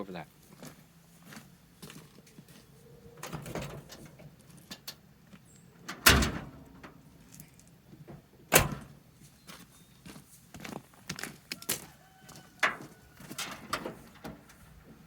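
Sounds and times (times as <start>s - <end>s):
latch clicks and rattles: 3.2s - 5.0s, 5.8s - 9.0s, 12.6s - 14.6s
loud thunks of truck hood: 5.9s - 7.0s, 8.1s - 9.0s.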